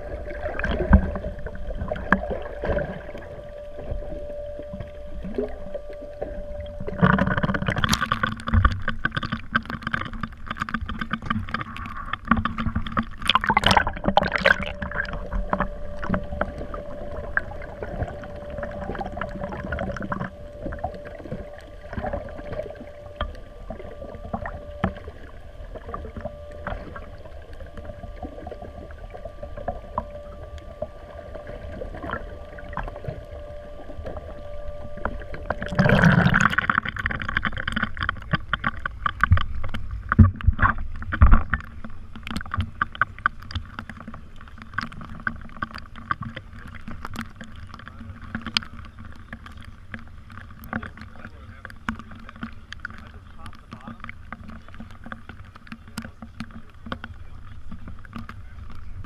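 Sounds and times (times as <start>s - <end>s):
boat motor hum: 0.0s - 59.0s
water knocking and splashing: 6.7s - 25.2s, 34.8s - 59.0s.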